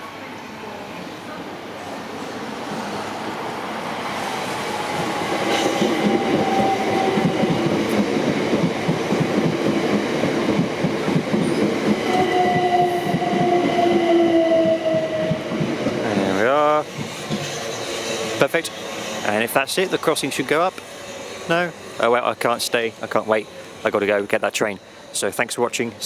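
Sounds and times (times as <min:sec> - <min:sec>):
electric train whine: 0:02.0 - 0:26.0.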